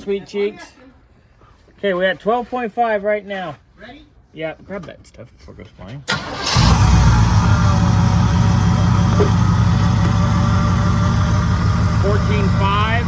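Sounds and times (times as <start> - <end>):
car engine starting and idling: 6.1 - 13.0.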